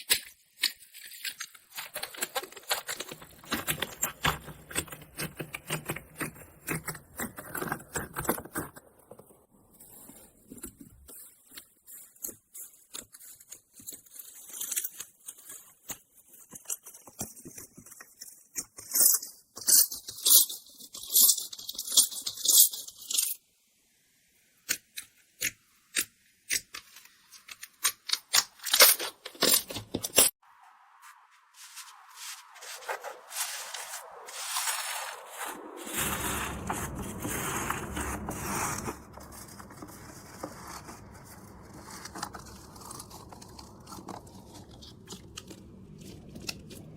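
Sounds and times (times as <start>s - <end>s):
crunchy slime crackling and popping: 34.0s - 46.9s.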